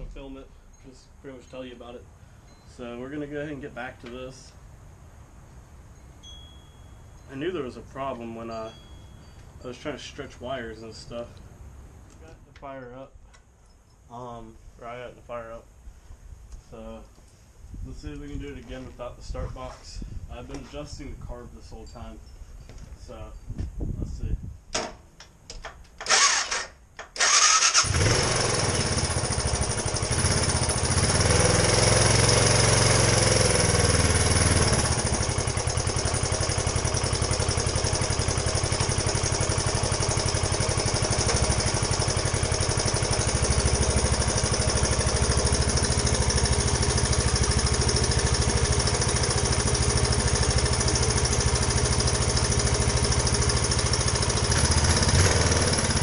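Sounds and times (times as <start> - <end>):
electric starter cranking: 26.0 - 56.0
motorcycle engine idling: 27.2 - 56.0.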